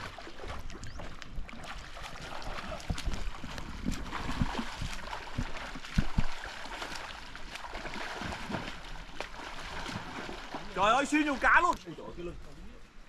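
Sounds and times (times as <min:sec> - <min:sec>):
stream water gurgling: 0:00.0 - 0:12.4.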